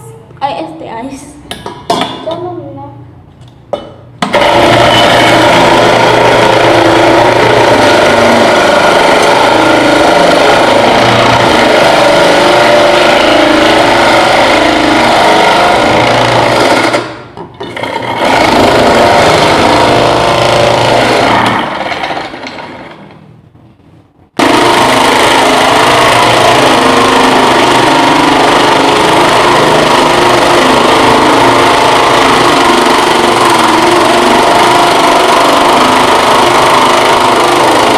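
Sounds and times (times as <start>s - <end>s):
appliance motor humming: 4.3s - 17.0s, 24.4s - 37.9s.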